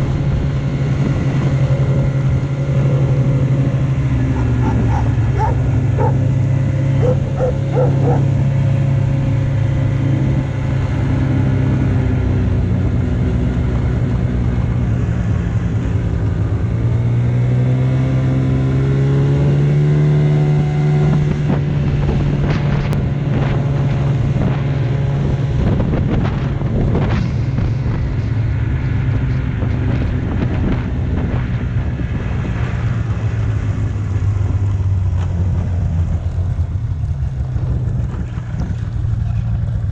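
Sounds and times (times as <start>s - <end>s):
vehicle engine running: 0.0s - 39.9s
dog barking: 4.3s - 6.3s, 7.0s - 8.4s.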